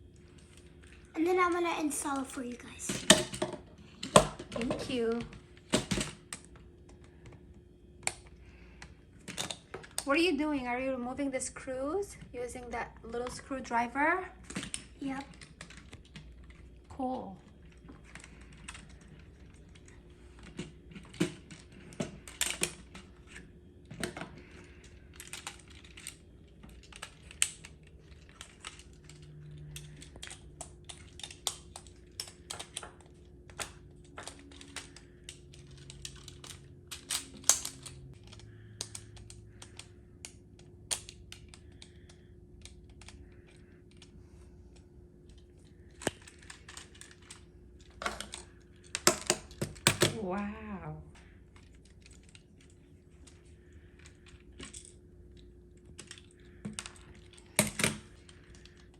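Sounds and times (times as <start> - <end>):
plastic parts knocking: 2.9 - 6.2, 48.0 - 50.2.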